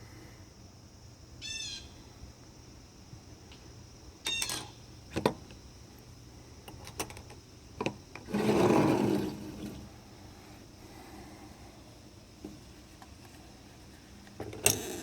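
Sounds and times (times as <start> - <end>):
metal scraping rub: 8.3 - 9.9.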